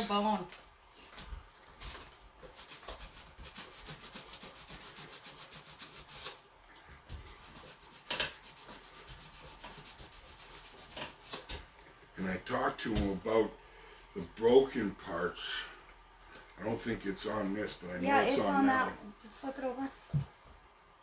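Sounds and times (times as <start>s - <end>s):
sandpaper rubbing on plastic: 1.8s - 6.4s, 7.2s - 11.6s.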